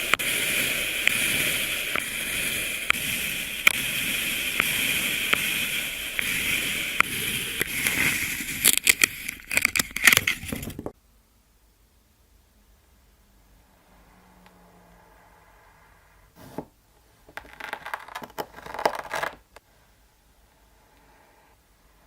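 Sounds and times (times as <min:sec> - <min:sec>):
kinetic sand hissing: 0:00.0 - 0:10.8
sand crunching crackles: 0:00.0 - 0:10.8.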